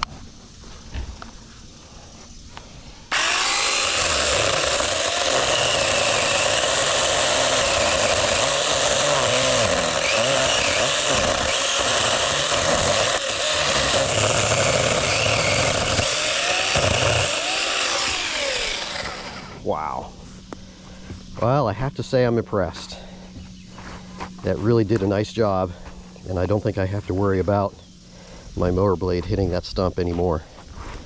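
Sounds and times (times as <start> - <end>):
electric chainsaw cutting wood: 3.1 - 19.6.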